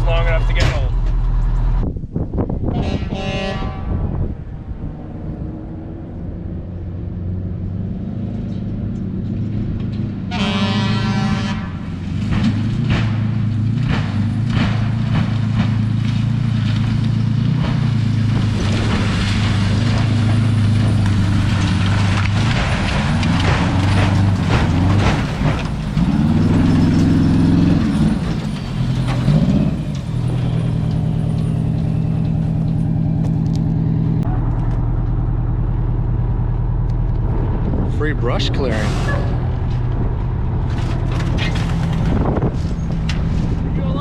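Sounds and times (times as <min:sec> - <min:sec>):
fire truck horn blasts: 0:02.6 - 0:04.2, 0:10.2 - 0:12.0
fire truck engine running: 0:09.2 - 0:38.7.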